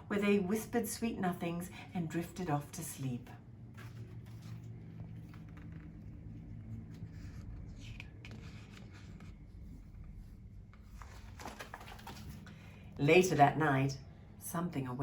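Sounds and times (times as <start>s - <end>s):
low room hum: 0.0s - 15.0s
paper pages rustling: 3.6s - 12.8s.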